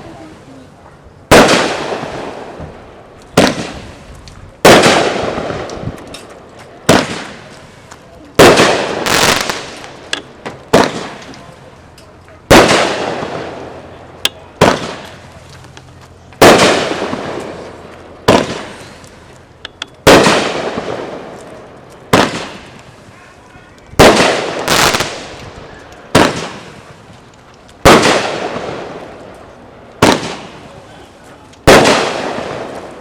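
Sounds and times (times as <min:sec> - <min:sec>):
firework bangs: 0:01.3 - 0:06.0, 0:06.8 - 0:11.6, 0:12.5 - 0:15.4, 0:16.4 - 0:19.3, 0:20.0 - 0:23.2, 0:23.9 - 0:27.2, 0:27.8 - 0:30.9, 0:31.6 - 0:33.0
small firework pops: 0:02.6 - 0:11.5, 0:18.3 - 0:22.9.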